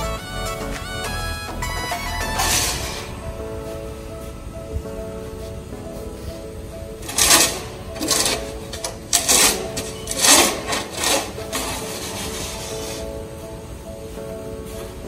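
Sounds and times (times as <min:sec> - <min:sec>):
background music: 0:00.0 - 0:15.0
snow shovel scraping snow: 0:07.0 - 0:13.2.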